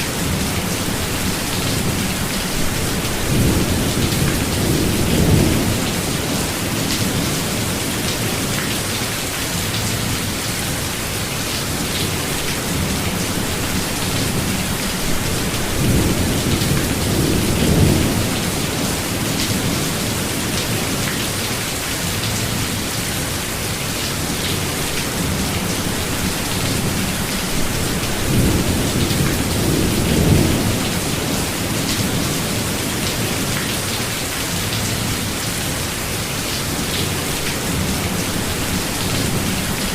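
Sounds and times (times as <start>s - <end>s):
heavy rain: 0.0s - 39.9s
low thunder rumbling: 0.2s - 7.8s, 12.7s - 21.0s, 25.1s - 32.8s.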